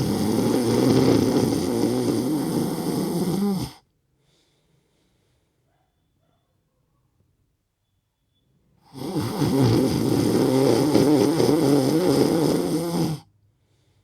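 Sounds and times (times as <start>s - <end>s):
rasping breath with snoring sound: 0.0s - 3.8s, 8.9s - 13.3s.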